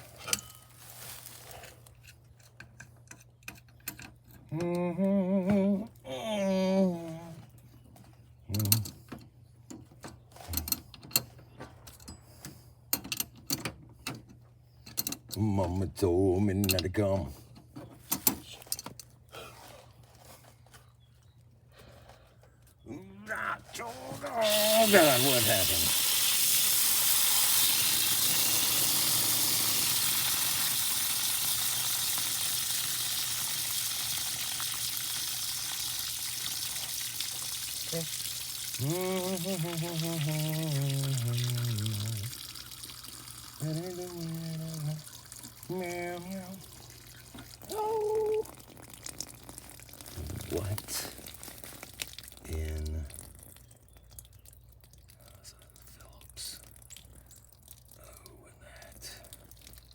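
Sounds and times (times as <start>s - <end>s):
metallic clicks and taps of tools: 2.4s - 4.8s, 11.9s - 15.4s
water spraying from faucet: 24.0s - 53.3s.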